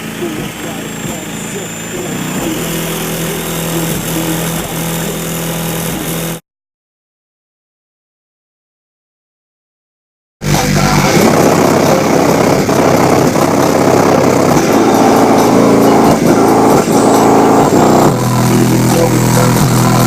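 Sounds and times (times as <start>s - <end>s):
distorted car subwoofer bass: 0.0s - 6.4s, 10.4s - 20.0s.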